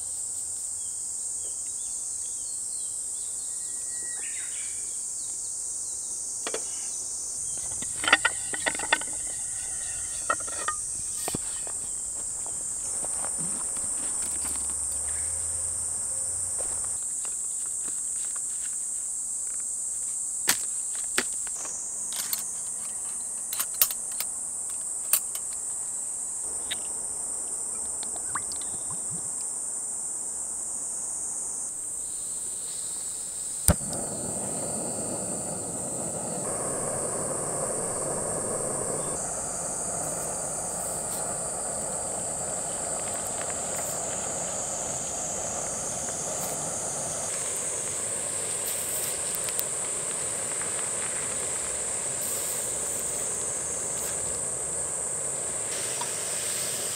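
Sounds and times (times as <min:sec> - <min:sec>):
high-pitched insect chorus: 0:00.0 - 0:56.9
loud crack: 0:33.7 - 0:39.4
soft rushing noise: 0:33.7 - 0:56.9.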